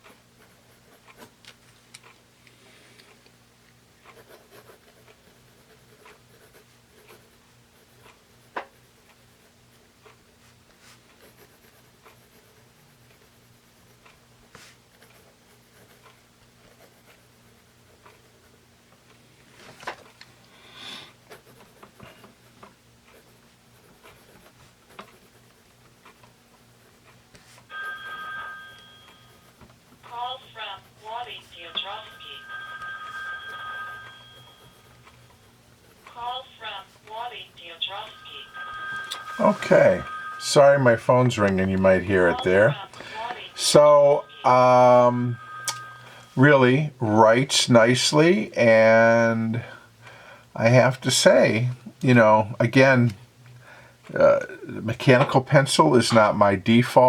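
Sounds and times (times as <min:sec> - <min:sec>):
pencil scratching on paper: 0:04.1 - 0:18.6, 0:21.1 - 0:26.2, 0:26.8 - 0:29.8, 0:32.0 - 0:36.4
phone ringing: 0:27.7 - 0:35.4, 0:36.0 - 0:49.5.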